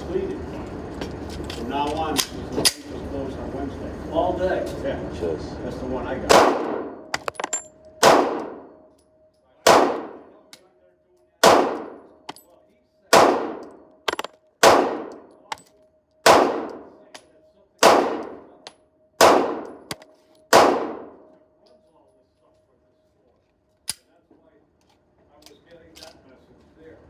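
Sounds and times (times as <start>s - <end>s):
handgun shots echoing: 6.3s - 8.8s, 9.6s - 10.4s, 11.4s - 12.4s, 13.1s - 15.6s, 16.2s - 17.2s, 17.8s - 21.3s.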